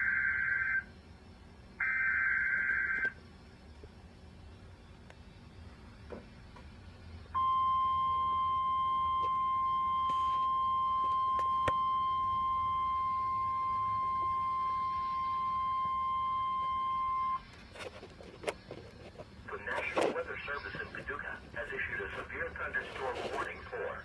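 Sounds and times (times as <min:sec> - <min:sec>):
piercing alarm tone: 0:00.0 - 0:00.9, 0:01.8 - 0:03.2, 0:07.4 - 0:17.4
faint radio hiss: 0:17.4 - 0:24.0.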